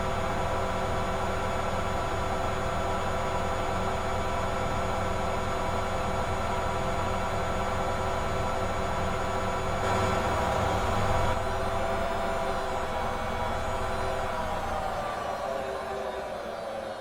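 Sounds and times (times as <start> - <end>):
washing machine spinning: 9.6 - 17.0.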